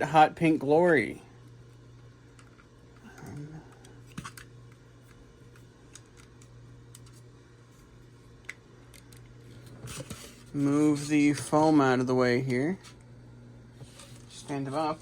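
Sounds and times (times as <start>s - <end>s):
low electrical hum: 0.0s - 15.0s.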